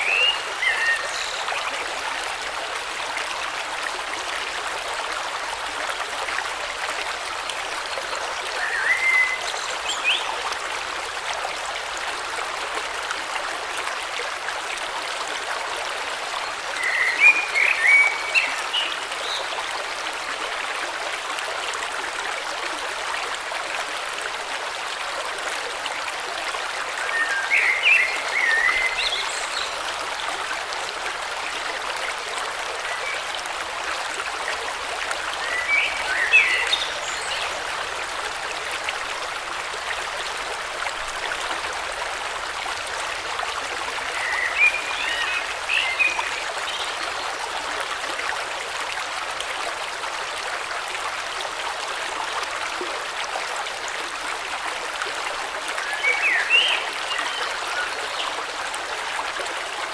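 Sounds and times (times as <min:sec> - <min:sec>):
river water flowing: 0:00.0 - 0:59.9.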